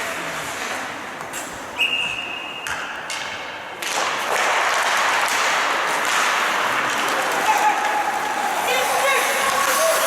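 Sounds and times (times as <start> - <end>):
broad rink noise: 0.0 - 10.0
referee's whistle: 1.8 - 2.6.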